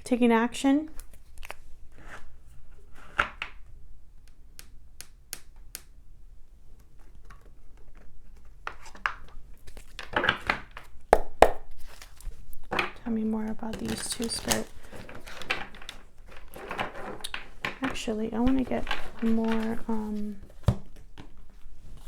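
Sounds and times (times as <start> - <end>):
cards rustling and riffling: 0.9 - 3.4, 6.8 - 11.0, 11.6 - 13.0, 13.6 - 22.0
sharp taps: 11.1 - 11.6.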